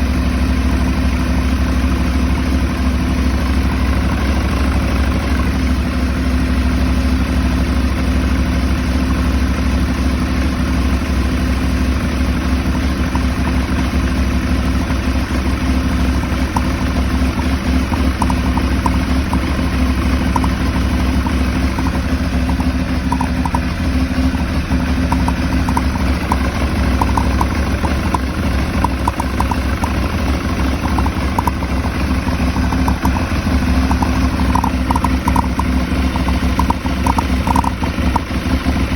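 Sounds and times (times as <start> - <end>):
motorcycle engine idling roughly: 0.0 - 38.9
faint light ticking: 16.4 - 38.5.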